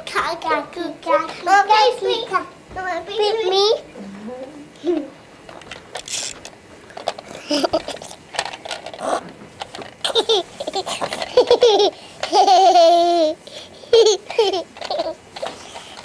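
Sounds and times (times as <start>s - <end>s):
young child laughing: 7.3s - 8.0s, 10.0s - 15.2s.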